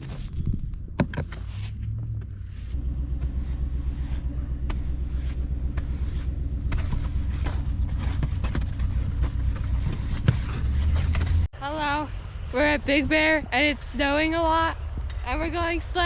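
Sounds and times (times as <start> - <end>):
car engine running: 0.0 - 11.5.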